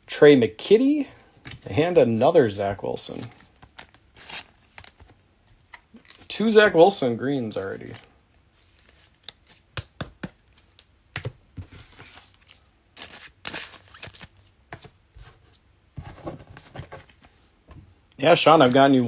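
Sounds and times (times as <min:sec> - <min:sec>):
card packaging clicks and rustles: 0:03.2 - 0:06.3.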